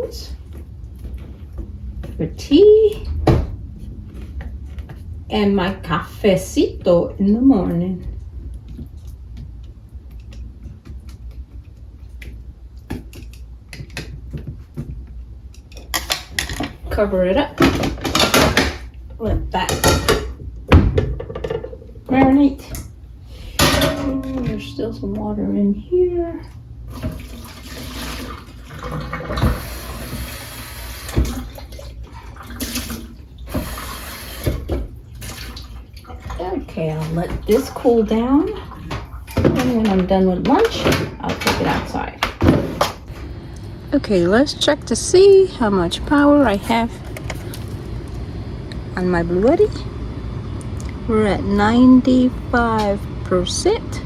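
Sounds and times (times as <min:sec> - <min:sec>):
water pouring and splashing: 0:26.9 - 0:40.6
steady low hum: 0:30.9 - 0:54.0.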